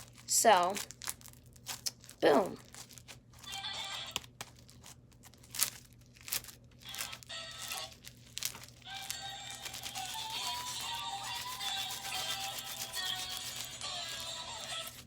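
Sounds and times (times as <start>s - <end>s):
slime crackling and popping: 0.0s - 13.6s
music: 6.8s - 8.0s, 8.8s - 15.0s.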